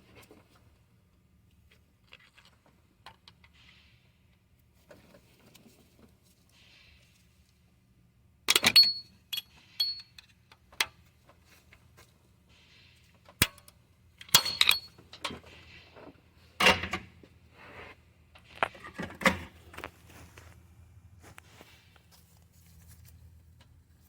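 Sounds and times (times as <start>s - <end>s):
metal tools clinking: 8.5s - 10.3s, 14.2s - 15.4s.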